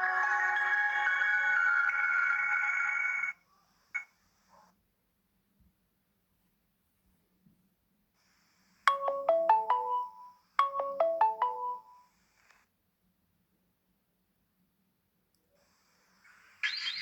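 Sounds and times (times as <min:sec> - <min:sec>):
phone ringtone: 0:00.0 - 0:03.3, 0:08.9 - 0:12.1.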